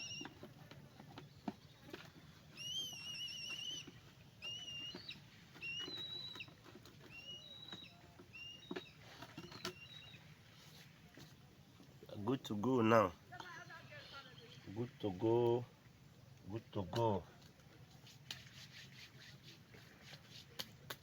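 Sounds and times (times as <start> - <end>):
birds calling: 0.0 - 17.2
trilled whistle: 2.6 - 6.5.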